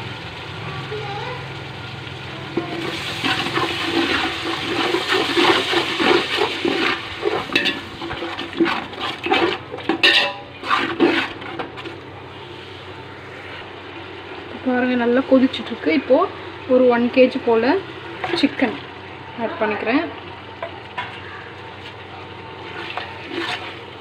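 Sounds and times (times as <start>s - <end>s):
sauce bubbling in a pot: 0.0s - 13.0s, 13.6s - 24.0s.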